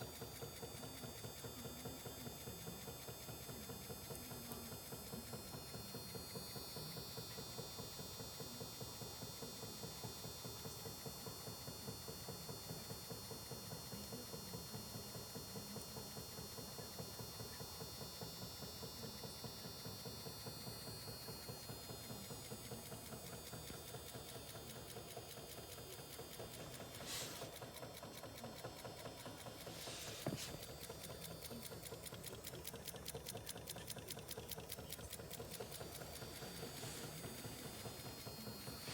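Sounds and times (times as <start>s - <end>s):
electric motor running: 0.0s - 38.9s
fast even ticking: 22.8s - 38.9s
faint high whine: 34.6s - 38.9s.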